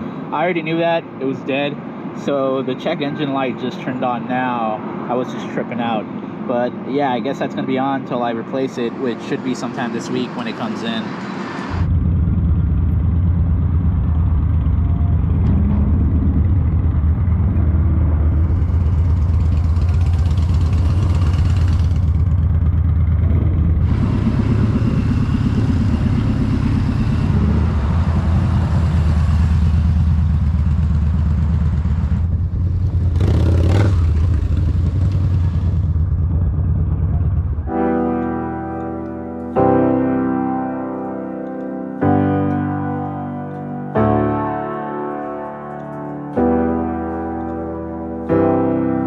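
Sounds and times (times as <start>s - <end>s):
motorcycle engine running: 11.8s - 38.8s.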